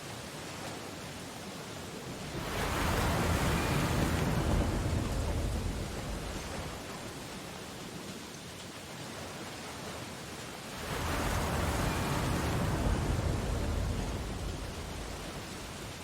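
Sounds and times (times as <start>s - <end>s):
ocean surf washing: 0.0s - 16.0s
wave breaking: 2.1s - 7.4s, 10.7s - 16.0s.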